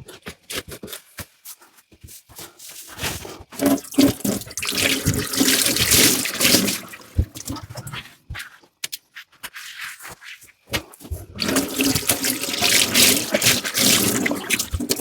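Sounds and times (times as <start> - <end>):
tap water running into sink: 3.6 - 8.0, 11.4 - 15.0.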